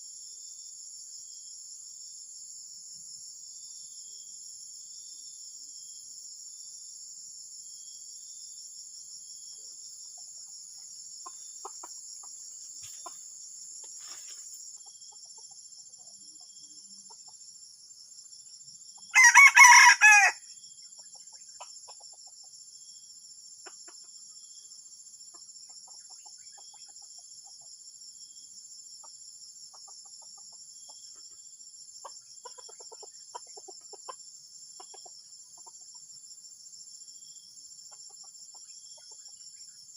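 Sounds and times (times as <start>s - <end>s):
high-pitched insect chorus: 0.0s - 39.9s
junglefowl crowing: 19.1s - 20.4s
faint soft fowl calls: 32.0s - 34.2s.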